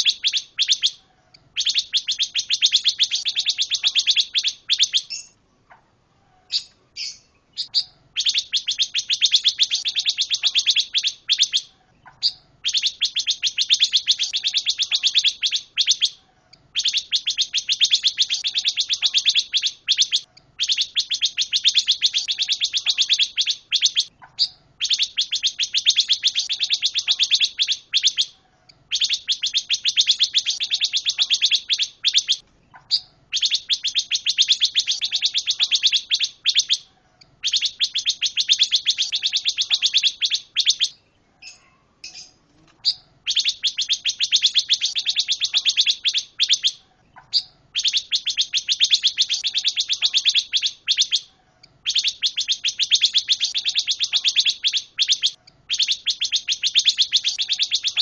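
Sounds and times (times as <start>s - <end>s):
songbird chattering trills: 0.0s - 5.4s, 6.4s - 58.0s.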